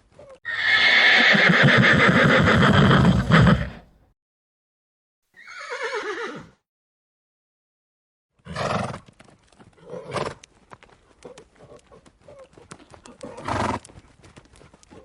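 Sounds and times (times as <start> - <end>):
hoof clip-clops: 0.0 - 0.4, 8.6 - 15.0
horse whinnying: 0.5 - 3.9, 5.4 - 6.6.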